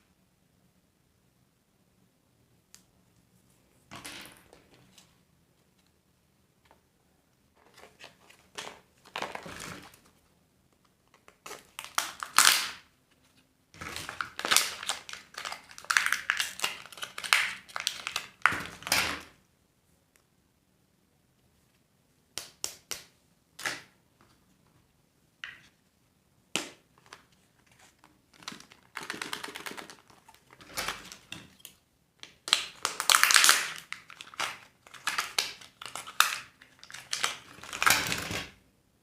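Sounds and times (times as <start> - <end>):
wrapper clicks and snaps: 11.2 - 12.8, 14.0 - 18.9, 28.4 - 38.2
wrapper crinkling and tearing: 11.4 - 12.8, 13.8 - 19.2, 27.8 - 31.6, 32.4 - 38.5.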